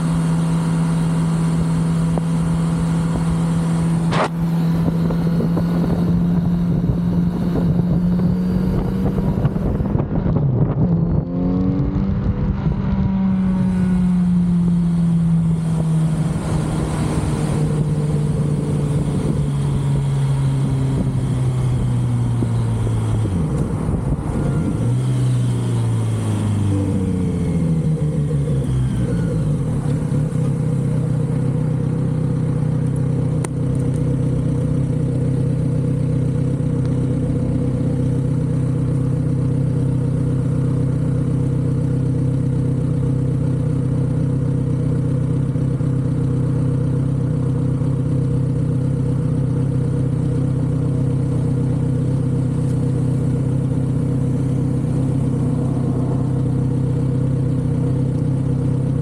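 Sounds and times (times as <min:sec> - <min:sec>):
motorcycle engine idling: 0:13.0 - 0:59.0.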